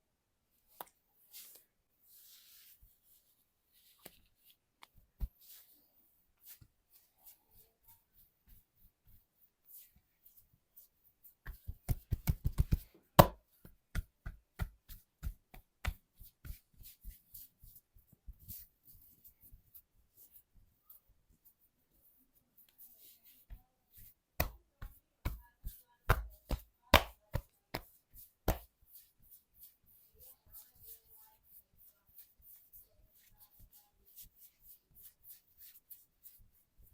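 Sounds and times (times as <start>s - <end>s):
hands slapping the body: 11.4s - 17.5s, 23.5s - 28.8s.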